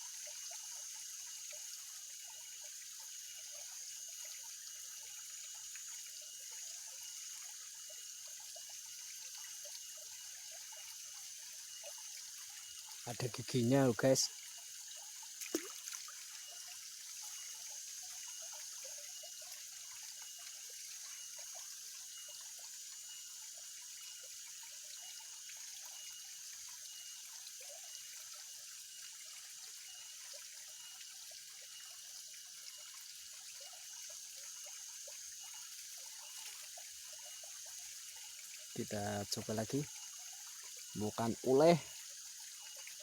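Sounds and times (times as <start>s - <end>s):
water trickling: 0.0s - 43.0s
water dripping: 15.2s - 16.7s.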